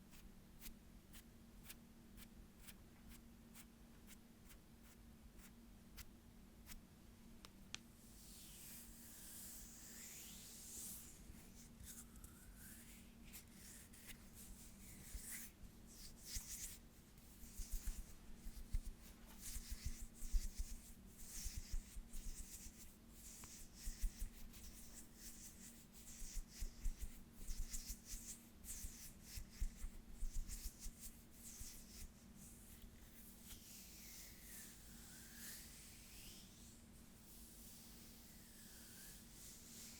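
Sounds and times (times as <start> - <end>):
hands rubbing together: 23.4 - 35.6.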